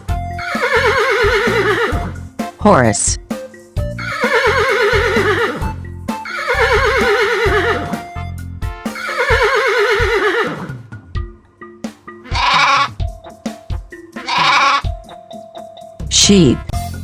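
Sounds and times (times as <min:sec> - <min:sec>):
children's music with light beat: 0:00.0 - 0:17.0
horse neighing: 0:00.4 - 0:02.2, 0:04.0 - 0:08.0, 0:09.0 - 0:10.8, 0:12.2 - 0:13.0, 0:14.1 - 0:14.9.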